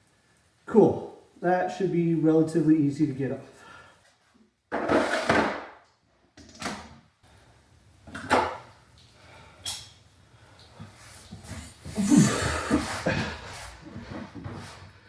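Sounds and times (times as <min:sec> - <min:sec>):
scrape: 0:04.8 - 0:05.4, 0:12.7 - 0:14.9.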